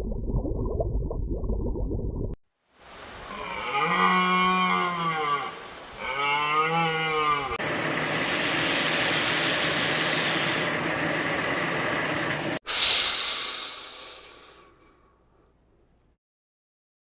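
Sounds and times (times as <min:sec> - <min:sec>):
loud hiss: 0:07.7 - 0:10.8, 0:12.6 - 0:14.8.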